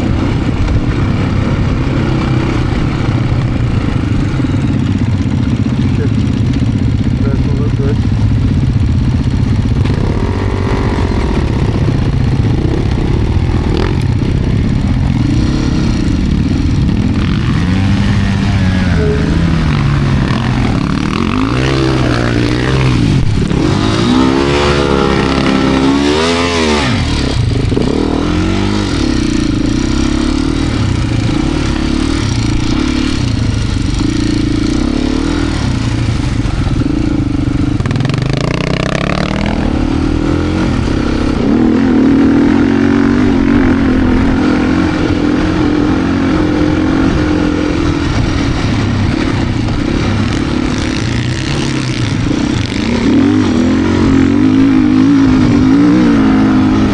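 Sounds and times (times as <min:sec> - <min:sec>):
dirt bike engine revving: 0:00.0 - 0:56.9.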